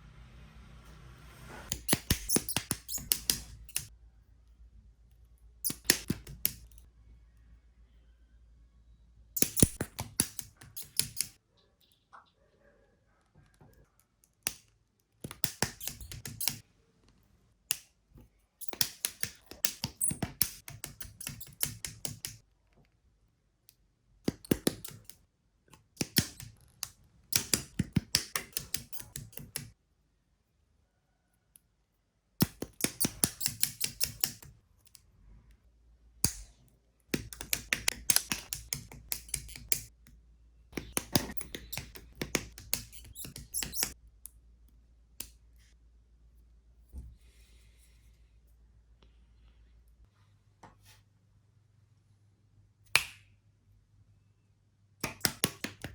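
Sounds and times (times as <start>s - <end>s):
small plastic clicks and ticks: 1.7s - 3.9s, 36.2s - 45.4s.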